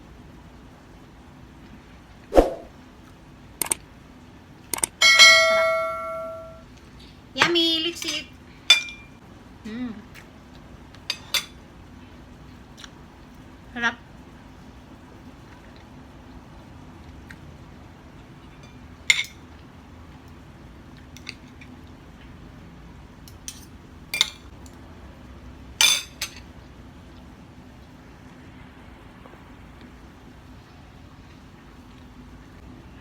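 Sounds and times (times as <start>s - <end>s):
faint steady hum: 0.0s - 33.0s
cutlery clinking on a plate: 7.4s - 9.1s, 11.1s - 11.6s, 18.6s - 19.4s, 23.3s - 24.5s, 25.8s - 26.5s.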